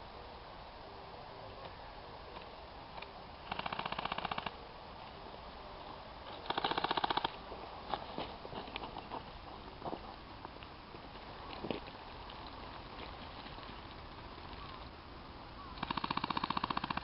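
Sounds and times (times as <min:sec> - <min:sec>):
airsoft gun firing: 0:06.5 - 0:07.3, 0:15.8 - 0:17.0.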